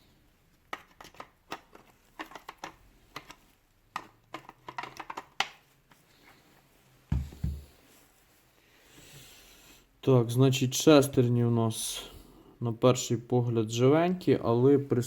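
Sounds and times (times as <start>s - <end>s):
plastic and metal parts clicking: 0.7s - 5.6s.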